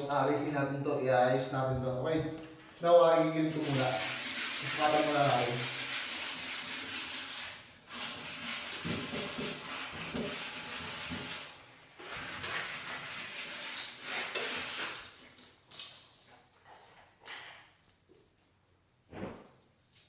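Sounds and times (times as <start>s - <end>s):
plastic molding scraping on wall: 3.6s - 15.2s.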